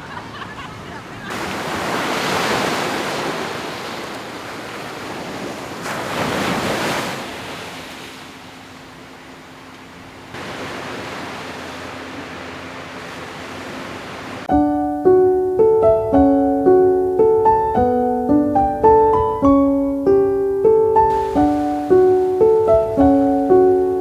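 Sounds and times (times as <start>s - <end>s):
sea surf rushing: 1.2s - 19.4s, 20.6s - 24.0s
soft solo piano: 14.5s - 24.0s.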